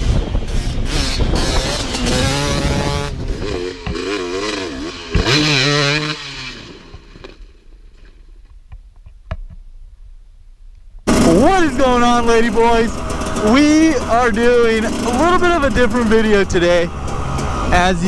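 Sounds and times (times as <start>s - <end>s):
dirt bike engine revving: 0.0s - 7.6s, 11.1s - 18.0s.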